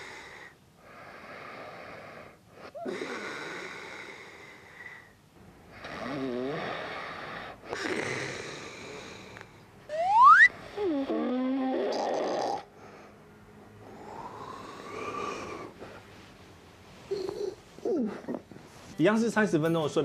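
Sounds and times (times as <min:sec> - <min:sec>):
man breathing wheezily with snoring: 0:00.0 - 0:09.7, 0:10.5 - 0:16.0
loud rising whistle: 0:09.9 - 0:10.6.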